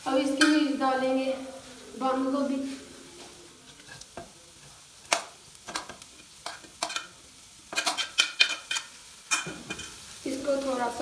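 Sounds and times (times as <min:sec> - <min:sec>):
vegetables sizzling in oil: 0:00.0 - 0:11.0
spoon clinking and scraping pan: 0:03.7 - 0:10.1.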